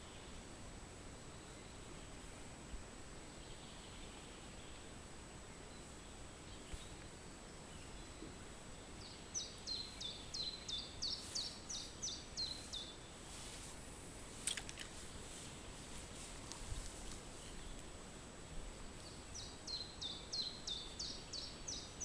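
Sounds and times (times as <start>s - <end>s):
songbird singing: 0.0s - 0.5s, 1.2s - 22.0s
sharp clicks: 14.4s - 15.0s.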